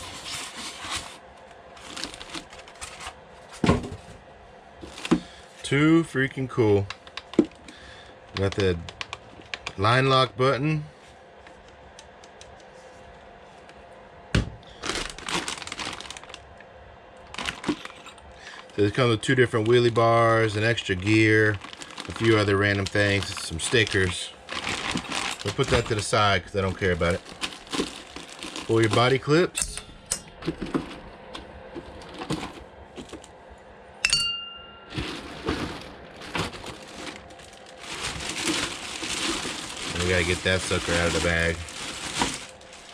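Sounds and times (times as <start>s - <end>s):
plastic packaging crinkling: 0.0s - 3.7s, 4.8s - 5.4s, 14.7s - 16.6s, 17.2s - 29.4s, 34.9s - 42.9s
sharp ringing clink: 34.0s - 34.9s.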